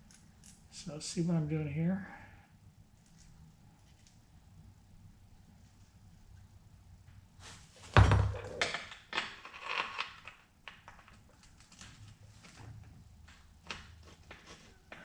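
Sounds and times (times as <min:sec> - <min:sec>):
heavy thunk: 0:07.9 - 0:08.6.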